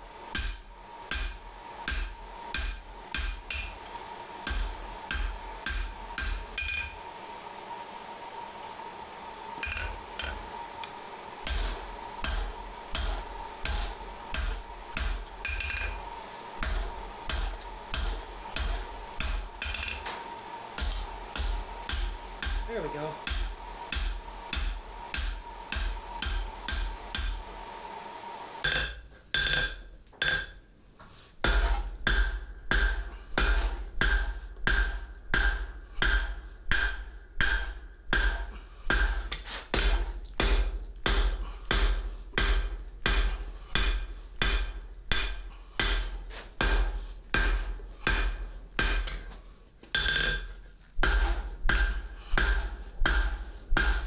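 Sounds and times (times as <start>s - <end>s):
steady hum: 0.0s - 54.0s
hammer ringing on anvil: 4.4s - 7.0s, 28.6s - 30.6s, 31.5s - 39.2s, 50.0s - 54.0s.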